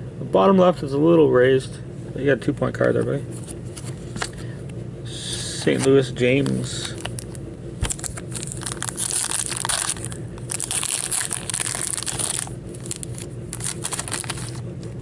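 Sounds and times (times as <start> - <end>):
foil wrapper crinkling and tearing: 6.4 - 14.6.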